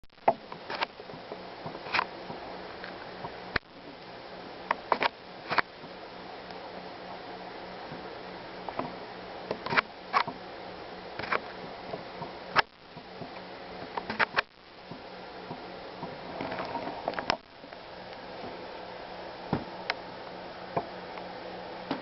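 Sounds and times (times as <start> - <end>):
steady hiss: 0.2 - 22.0.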